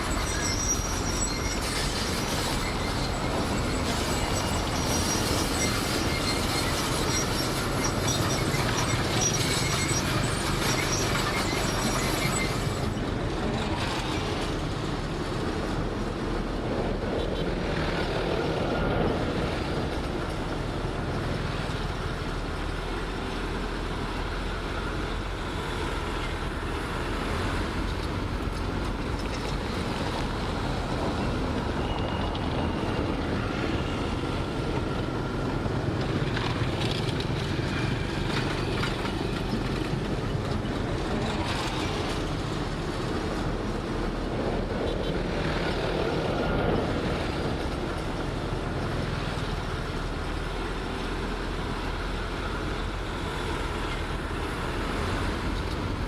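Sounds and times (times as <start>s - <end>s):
heavy diesel machinery running: 0.0s - 56.0s.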